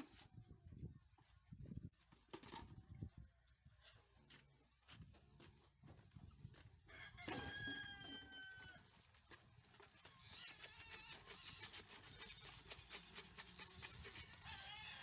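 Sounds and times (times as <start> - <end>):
rooster crowing: 6.9 - 8.8.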